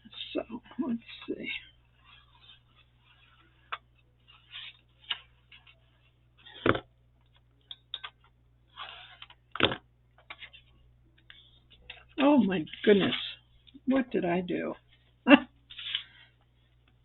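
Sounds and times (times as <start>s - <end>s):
paper rustling: 11.3s - 13.4s.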